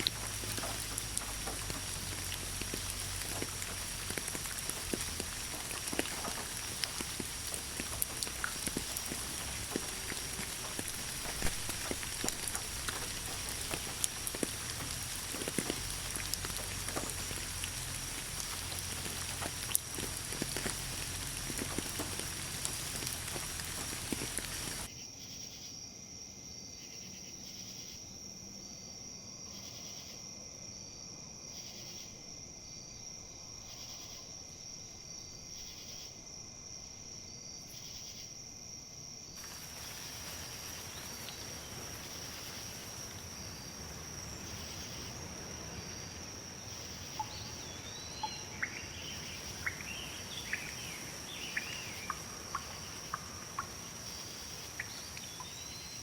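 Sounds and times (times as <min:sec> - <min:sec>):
rain pattering: 0:00.0 - 0:24.9, 0:39.4 - 0:56.0
soft hiss: 0:00.0 - 0:24.9, 0:39.4 - 0:56.0
wind rustling leaves: 0:00.0 - 0:24.9, 0:39.3 - 0:56.0
high insect trill: 0:00.0 - 0:25.7, 0:30.8 - 0:56.0
bird chirping: 0:47.1 - 0:53.7.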